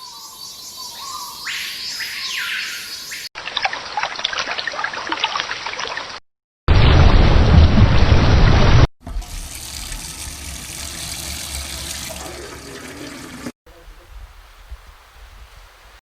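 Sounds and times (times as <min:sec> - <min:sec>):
running water: 0:09.0 - 0:13.6.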